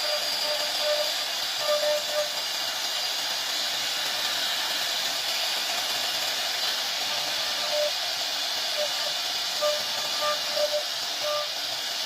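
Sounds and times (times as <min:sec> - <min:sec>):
thin high whine: 0:00.0 - 0:02.4, 0:07.0 - 0:08.0, 0:08.7 - 0:11.6
router spindle hiss: 0:00.0 - 0:12.0.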